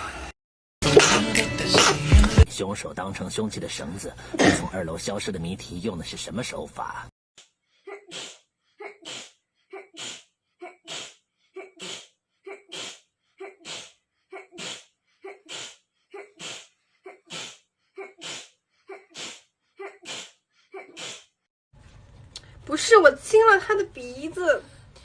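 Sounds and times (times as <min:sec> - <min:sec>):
woman sneezing: 0:07.9 - 0:21.3.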